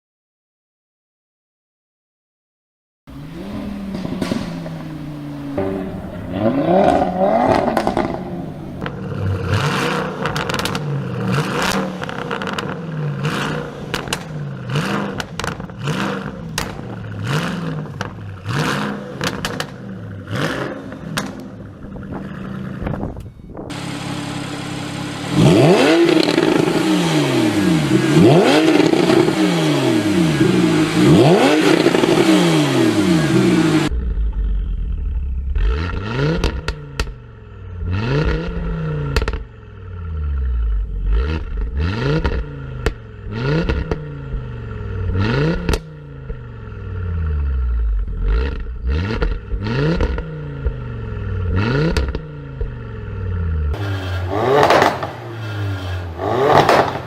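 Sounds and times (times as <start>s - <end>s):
sports car engine revving: 3.1s - 23.1s, 23.7s - 57.0s
exhaust crackles and pops: 3.5s - 23.8s, 25.6s - 26.8s, 33.7s - 46.6s, 47.2s - 52.9s, 53.8s - 55.5s, 56.3s - 57.0s.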